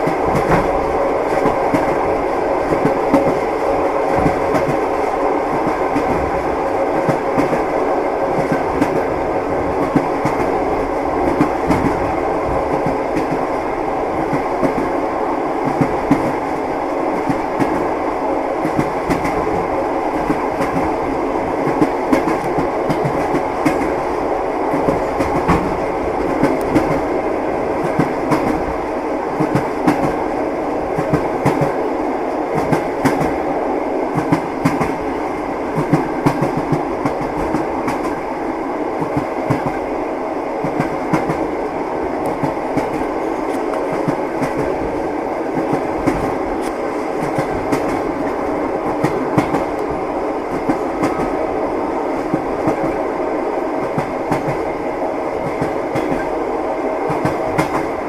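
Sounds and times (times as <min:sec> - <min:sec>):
railway carriage rolling rumble: 0:00.0 - 0:58.0
train wheels clacking on rail joints: 0:11.2 - 0:13.5, 0:42.3 - 0:44.8, 0:45.6 - 0:49.9, 0:55.4 - 0:56.3, 0:57.1 - 0:58.0.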